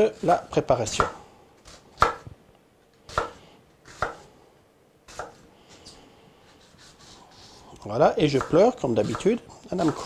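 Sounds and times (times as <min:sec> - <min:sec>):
knife chopping on cutting board: 0:00.2 - 0:02.3, 0:03.1 - 0:04.3, 0:05.1 - 0:05.4, 0:08.3 - 0:10.0.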